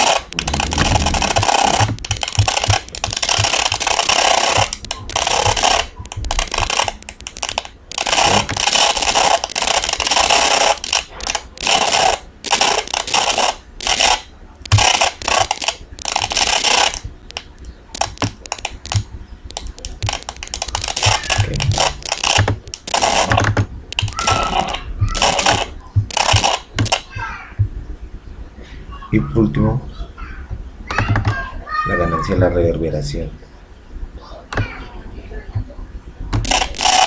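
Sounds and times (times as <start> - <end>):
noisy hiss and crackle: 0.0 - 27.1, 36.4 - 37.0.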